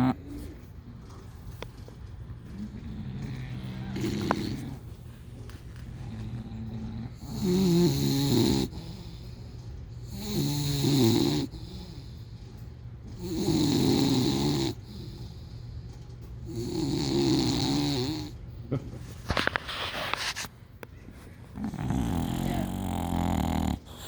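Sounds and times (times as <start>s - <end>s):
dog snoring loudly: 0.0s - 0.7s, 2.4s - 5.1s, 5.8s - 15.6s, 16.4s - 18.4s, 21.6s - 24.0s.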